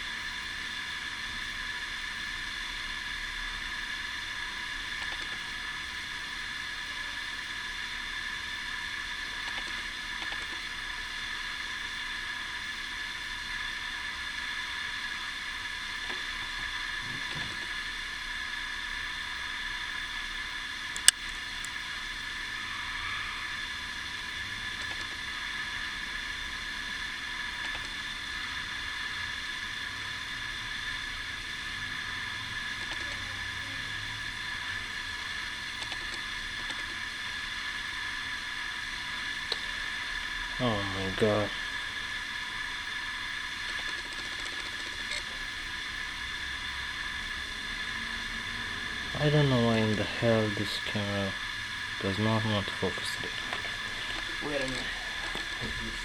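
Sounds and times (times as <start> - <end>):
steady hiss with faint whine: 0.0 - 56.0
sharp click: 21.0 - 21.8, 35.8 - 37.0.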